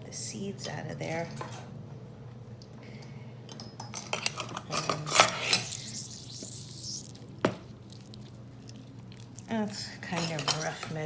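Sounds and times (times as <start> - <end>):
utensils clinking against dishes: 3.5 - 6.3, 9.5 - 11.0.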